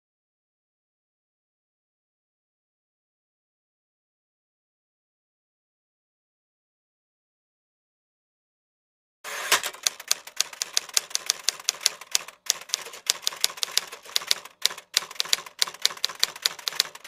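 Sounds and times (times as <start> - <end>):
typewriter keys clacking: 9.3 - 17.0.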